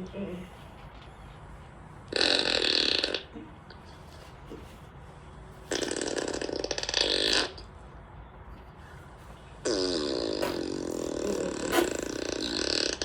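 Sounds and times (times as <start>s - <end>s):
comic fart sound effects: 2.1s - 3.4s, 5.7s - 7.6s, 9.6s - 13.0s.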